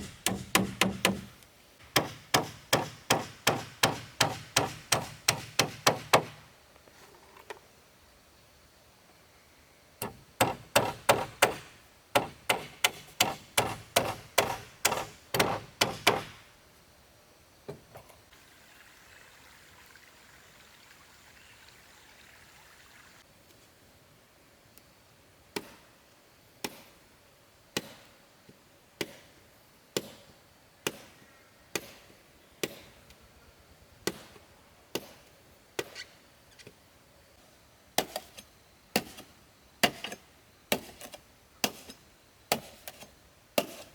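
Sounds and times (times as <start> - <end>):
hammer knocking on wood: 0.0 - 1.3, 1.9 - 6.4, 10.0 - 16.4.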